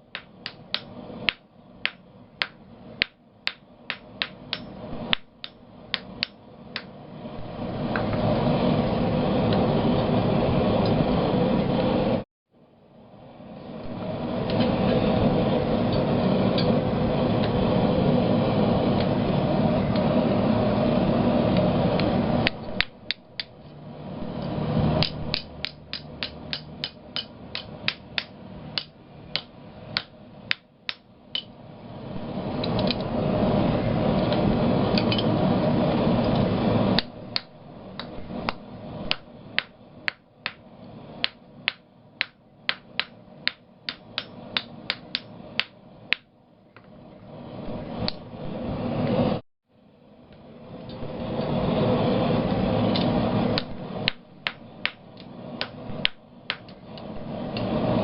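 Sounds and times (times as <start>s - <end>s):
forge roaring: 4.1s - 12.2s, 12.9s - 30.5s, 31.5s - 40.1s, 50.1s - 58.0s.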